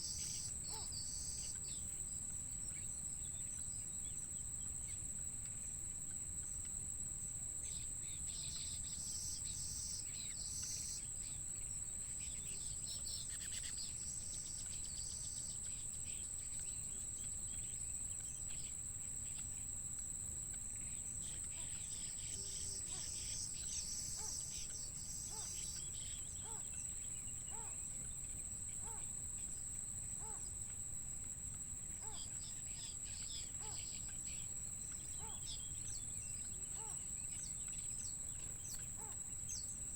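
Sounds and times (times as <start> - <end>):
insects droning: 0.0 - 39.9
birds chirping: 20.5 - 29.1, 32.0 - 39.8.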